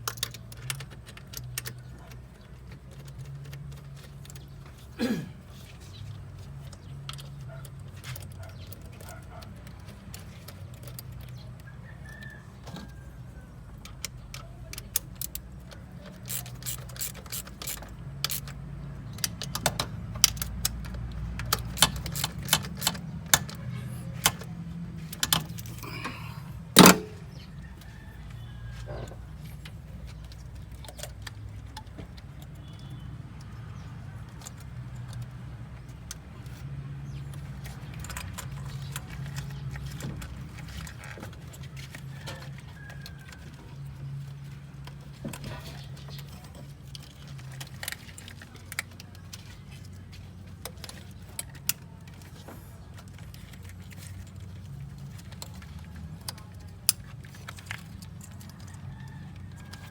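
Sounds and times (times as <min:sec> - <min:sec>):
metal tools clinking: 0:20.3 - 0:27.4.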